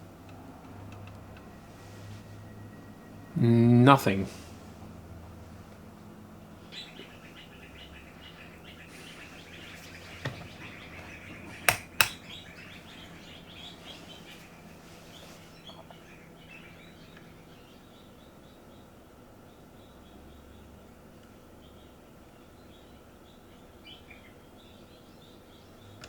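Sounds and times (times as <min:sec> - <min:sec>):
birds chirping: 0:01.2 - 0:26.0
sharp clicks: 0:11.6 - 0:12.2.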